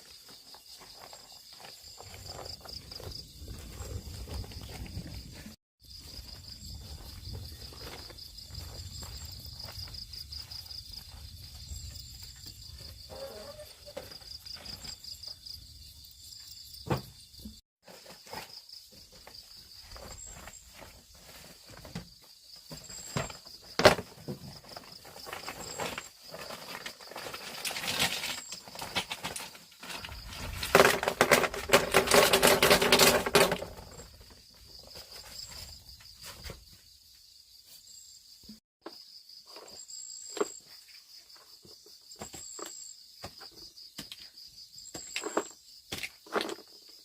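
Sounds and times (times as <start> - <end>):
footsteps in undergrowth: 5.9 - 12.7.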